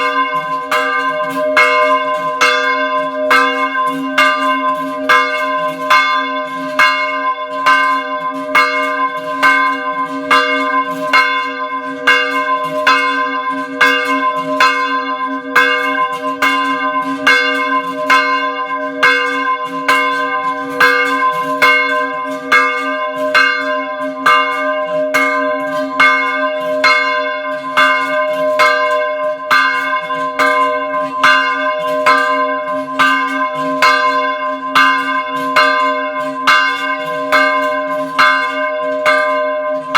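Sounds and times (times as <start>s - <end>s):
small church bells ringing rapidly: 0.0s - 39.9s.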